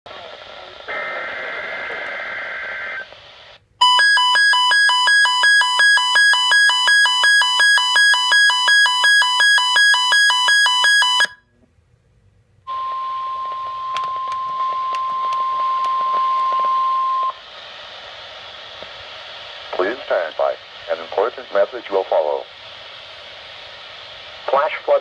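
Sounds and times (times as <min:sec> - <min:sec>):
radio static with crackles: 0:00.1 - 0:03.6, 0:13.3 - 0:25.0
steady warning tone: 0:03.8 - 0:11.4, 0:12.7 - 0:17.4.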